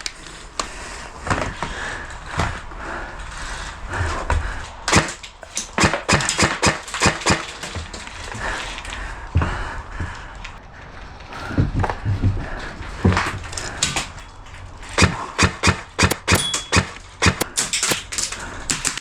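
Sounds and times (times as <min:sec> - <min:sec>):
airsoft gunfire cracks: 0:04.9 - 0:07.4.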